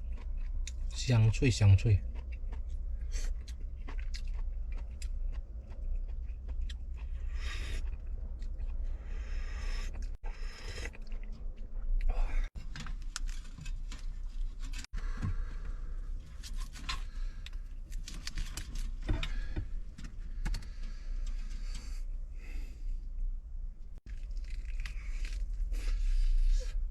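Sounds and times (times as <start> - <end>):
person chewing and biting food: 0.0 - 1.0, 1.9 - 19.4, 24.1 - 26.8
low rumble: 0.0 - 26.9.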